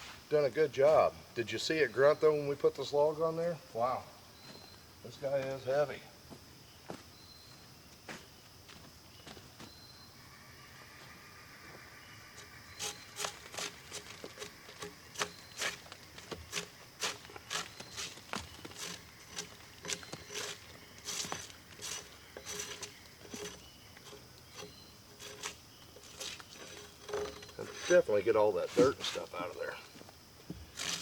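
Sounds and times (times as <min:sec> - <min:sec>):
brush scraping log bark: 0:12.4 - 0:29.7, 0:30.6 - 0:31.0.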